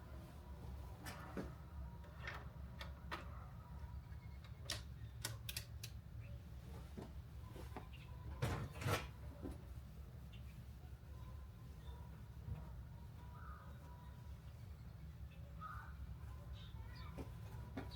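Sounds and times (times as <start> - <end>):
light clicks and taps: 4.4 - 6.0.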